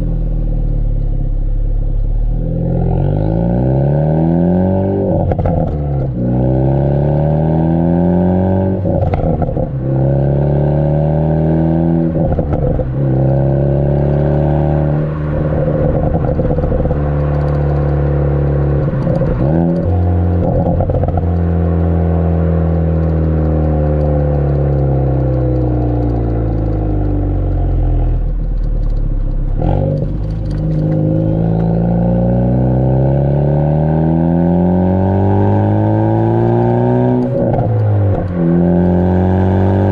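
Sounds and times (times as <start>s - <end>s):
car exhaust accelerating: 0.0s - 39.9s
exhaust crackles and pops: 5.0s - 6.4s, 8.7s - 10.6s, 11.6s - 32.8s, 35.1s - 39.9s.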